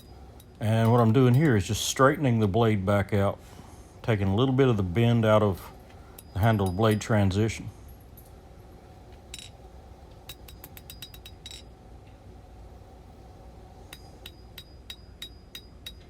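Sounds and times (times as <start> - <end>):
hammer tapping metal blade: 10.3 - 11.7, 13.9 - 16.0.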